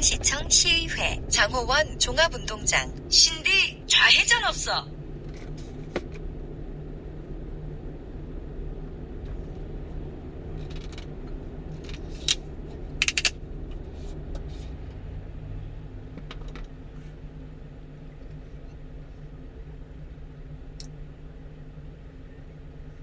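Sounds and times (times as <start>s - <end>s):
engine and road noise inside cab: 0.0s - 23.0s
short clicks or rattles: 13.0s - 13.3s.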